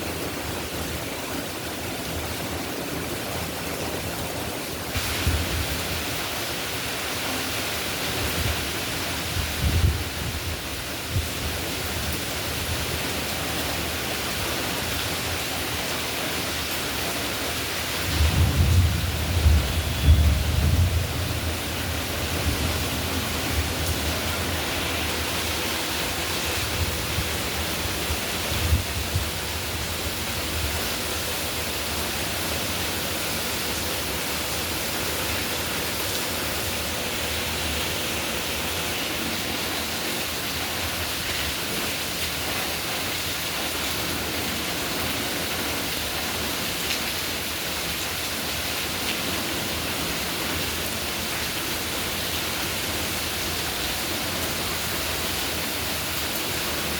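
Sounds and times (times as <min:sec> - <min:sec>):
steady rain: 0:00.0 - 0:56.9
low rumble of thunder: 0:18.0 - 0:24.6.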